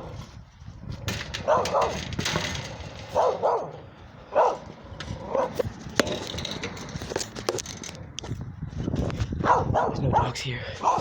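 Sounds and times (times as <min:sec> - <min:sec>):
outdoor rustling: 0:00.0 - 0:11.0
dogs barking: 0:01.4 - 0:02.0, 0:03.1 - 0:05.6, 0:09.4 - 0:11.0.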